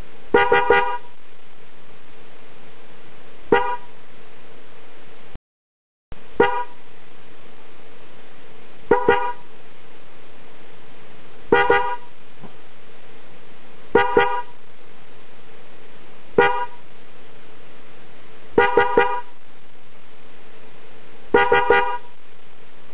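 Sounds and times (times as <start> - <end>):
car horn beeps: 0.4 - 1.1, 3.5 - 3.9, 6.4 - 6.8, 8.9 - 9.4, 11.5 - 12.1, 14.0 - 14.6, 16.4 - 16.8, 18.6 - 19.4, 21.3 - 22.2.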